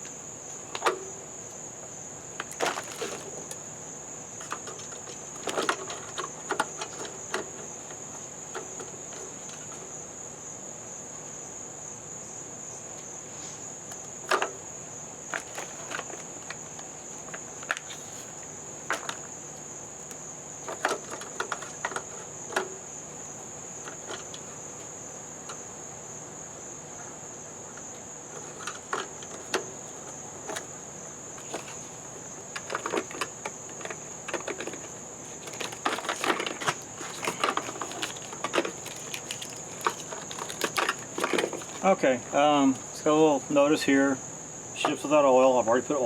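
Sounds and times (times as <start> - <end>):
handling clicks and rustles: 0.0 - 1.6, 2.2 - 3.7, 4.3 - 10.0, 13.8 - 14.6, 15.2 - 25.7, 27.7 - 42.9
crickets trilling: 0.0 - 46.0.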